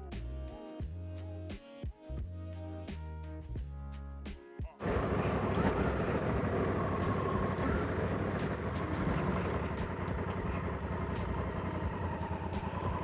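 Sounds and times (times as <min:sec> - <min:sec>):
motorcycle engine running: 0:04.8 - 0:13.0.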